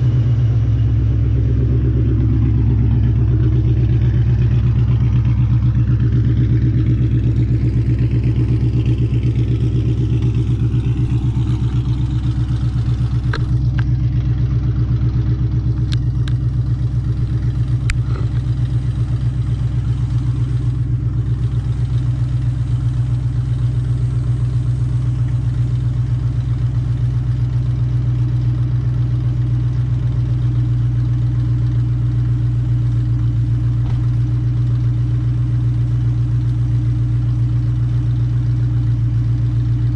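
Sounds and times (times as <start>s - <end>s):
car exhaust idling: 0.0s - 39.9s.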